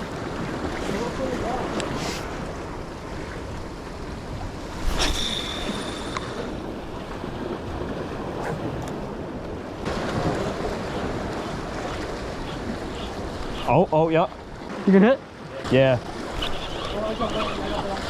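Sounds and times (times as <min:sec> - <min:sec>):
ocean surf washing: 0:00.0 - 0:18.0
high ringing tone: 0:04.9 - 0:06.8.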